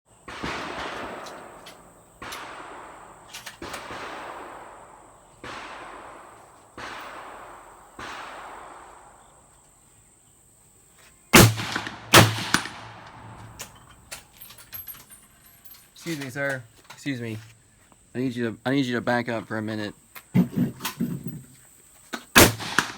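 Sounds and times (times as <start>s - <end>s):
echoing gunshots: 0.2s - 9.5s, 11.3s - 13.9s, 22.4s - 22.9s.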